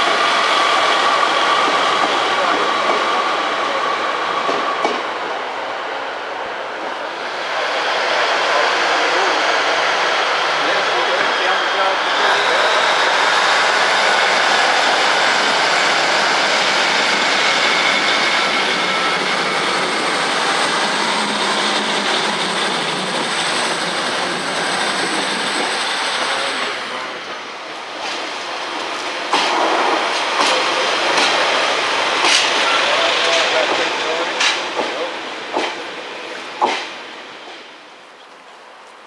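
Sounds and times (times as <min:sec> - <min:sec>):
train wheels clattering on rails: 0:00.0 - 0:03.8, 0:04.4 - 0:05.3, 0:12.3 - 0:37.8.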